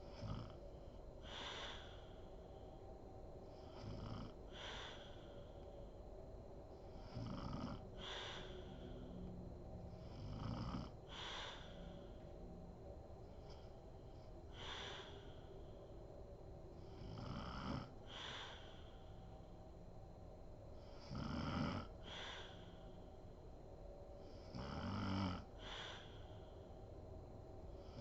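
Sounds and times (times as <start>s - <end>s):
woman snoring: 0.0s - 0.6s, 3.6s - 5.3s, 7.0s - 9.1s, 10.0s - 12.2s, 16.9s - 18.8s, 20.9s - 22.8s, 24.4s - 26.2s
breathy exhale: 1.2s - 2.8s, 3.5s - 6.0s, 7.8s - 9.3s, 11.0s - 12.3s, 13.3s - 16.0s, 18.0s - 19.5s, 22.0s - 23.3s, 25.5s - 26.8s.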